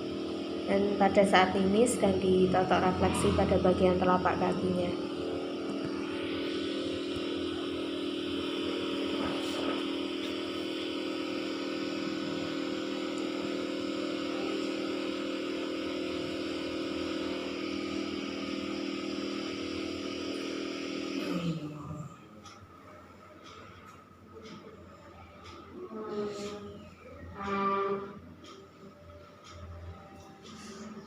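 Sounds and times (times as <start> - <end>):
motor hum: 0.0 - 31.0.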